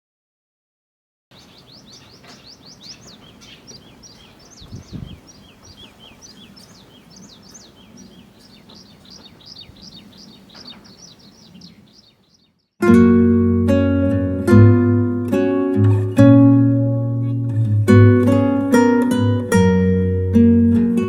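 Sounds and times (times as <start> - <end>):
small birds chirping: 1.3 - 12.8.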